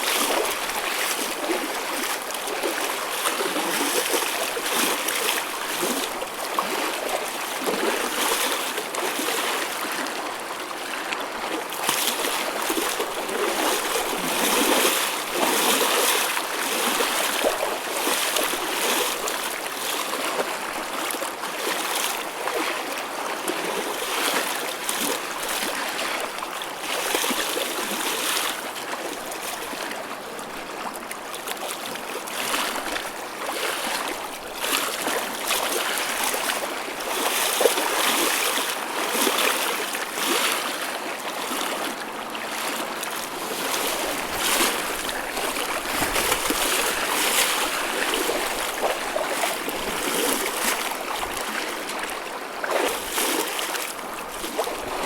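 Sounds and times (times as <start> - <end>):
ocean waves breaking: 43.0 - 55.0.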